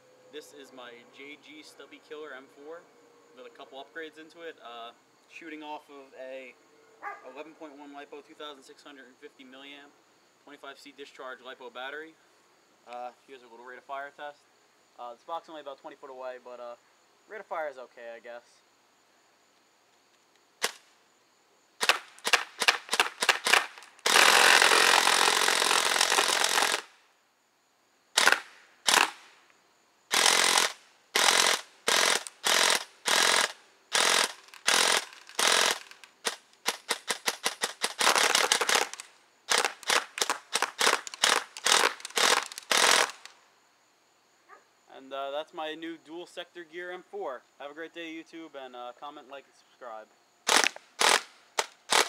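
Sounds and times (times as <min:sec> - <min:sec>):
airsoft gun firing: 0:21.8 - 0:26.9, 0:28.2 - 0:29.3, 0:30.1 - 0:43.3, 0:50.5 - 0:52.0.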